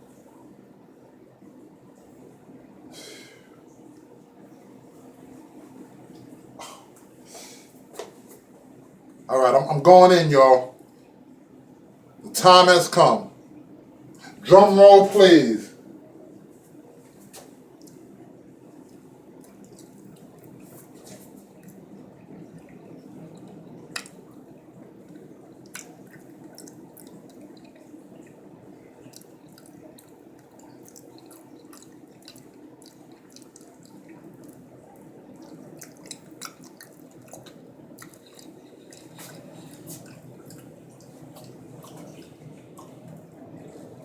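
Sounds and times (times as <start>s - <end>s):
person chewing wetly: 16.8s - 44.0s
water trickling and dripping: 18.8s - 44.0s.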